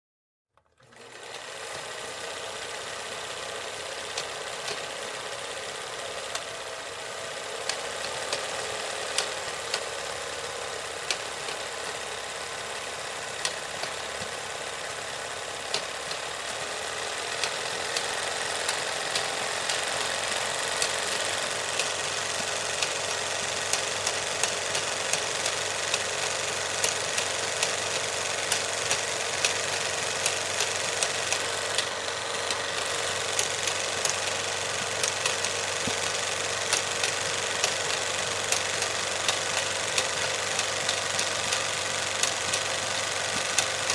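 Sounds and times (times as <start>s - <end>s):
film projector whirr and rattle: 0.6s - 43.9s
sharp clicks: 15.7s - 43.9s.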